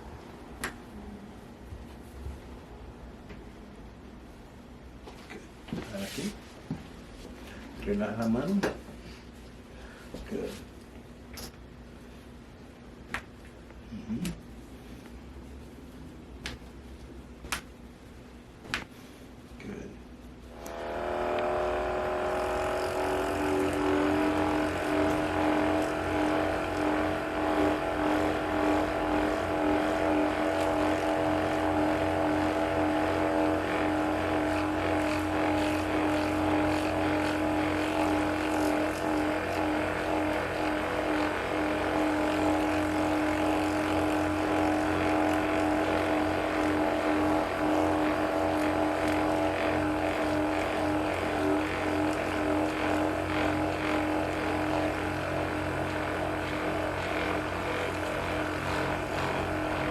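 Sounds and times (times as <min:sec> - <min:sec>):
small electric motor humming: 0:20.5 - 0:59.9.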